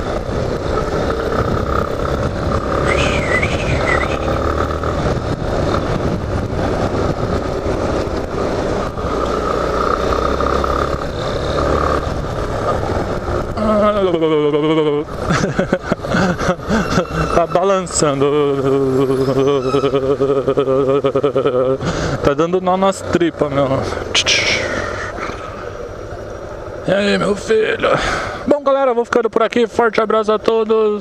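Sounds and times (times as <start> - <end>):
motorcycle engine running: 0.0 - 15.4
road and wind noise: 0.0 - 31.0.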